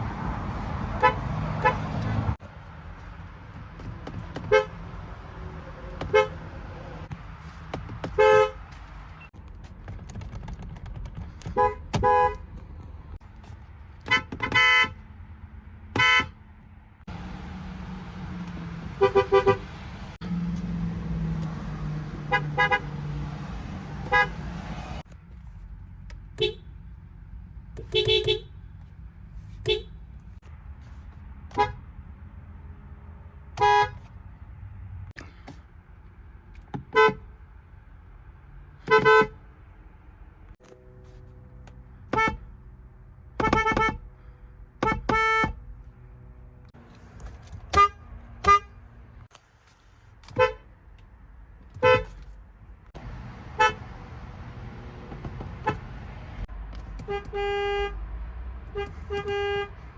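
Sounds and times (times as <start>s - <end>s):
car horns honking: 0.9s - 2.4s, 4.3s - 5.0s, 5.8s - 6.6s, 8.0s - 9.3s, 11.5s - 12.5s, 14.0s - 15.0s, 15.9s - 16.4s, 18.6s - 20.5s, 21.5s - 25.0s, 26.3s - 26.7s, 27.8s - 28.6s, 29.6s - 30.0s, 31.5s - 31.8s, 33.5s - 34.1s, 36.8s - 37.4s, 38.8s - 39.5s, 41.9s - 42.6s, 43.3s - 45.7s, 47.5s - 49.0s, 50.2s - 50.7s, 51.7s - 52.3s, 53.0s - 54.0s, 54.6s - 59.9s.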